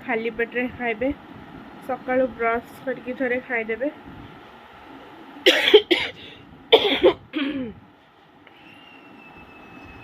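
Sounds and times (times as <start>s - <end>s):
woman coughing: 5.4s - 7.8s.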